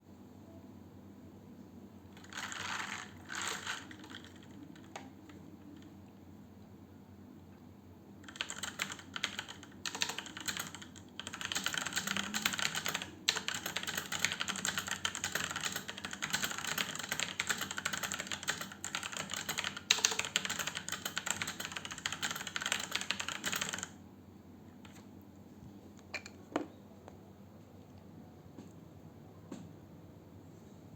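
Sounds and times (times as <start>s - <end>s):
fast typing on mechanical keyboard: 2.2s - 5.2s, 8.2s - 24.0s.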